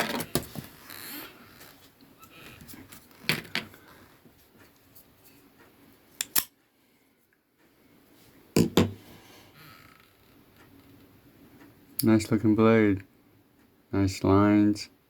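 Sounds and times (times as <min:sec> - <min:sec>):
folding knife clicks and knocks: 0:06.2 - 0:06.6.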